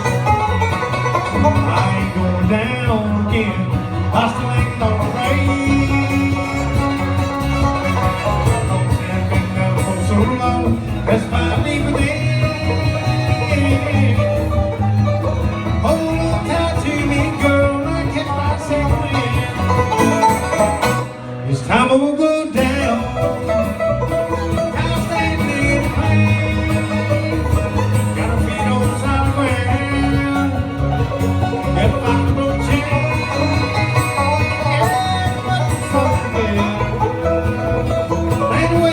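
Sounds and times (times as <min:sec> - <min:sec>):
banjo picking: 0:00.0 - 0:38.9
bluegrass band playing: 0:00.0 - 0:38.9
guitar picking: 0:00.0 - 0:38.9.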